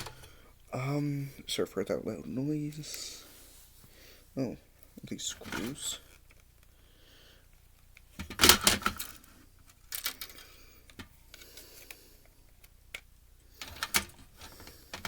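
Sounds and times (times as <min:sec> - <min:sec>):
clicks and clatters of small parts: 0:07.7 - 0:15.0.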